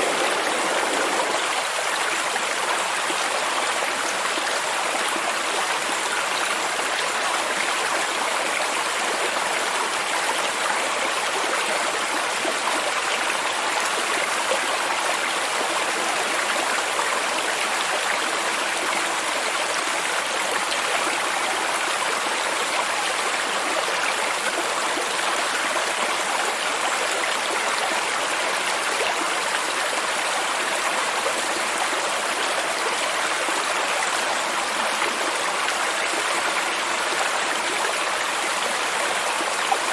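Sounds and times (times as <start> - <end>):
water rushing: 0.0 - 4.7.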